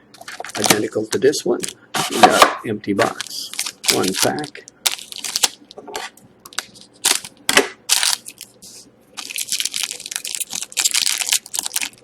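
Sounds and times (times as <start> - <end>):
wrapper crinkling and tearing: 3.1 - 5.8, 6.5 - 7.3, 7.9 - 8.6, 9.2 - 12.0.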